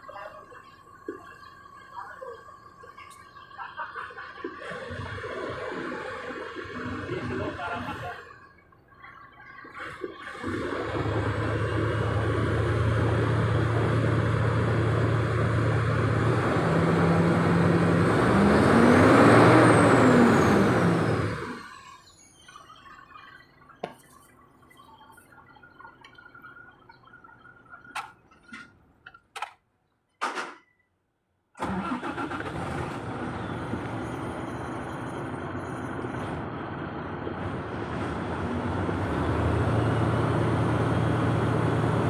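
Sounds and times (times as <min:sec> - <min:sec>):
starter cranking diesel engine: 0:09.8 - 0:21.8, 0:31.6 - 0:42.0.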